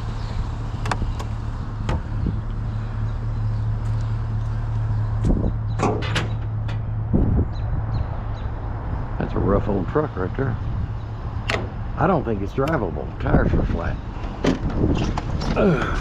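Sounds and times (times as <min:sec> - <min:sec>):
vehicle engine humming: 0:00.0 - 0:16.0
sharp clicks and clunks: 0:00.8 - 0:02.1, 0:05.8 - 0:06.9, 0:11.4 - 0:11.8.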